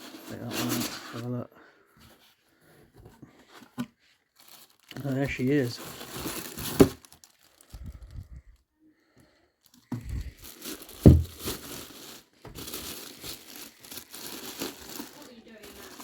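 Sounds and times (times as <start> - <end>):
packaging crinkling: 4.4 - 8.1, 9.6 - 16.0.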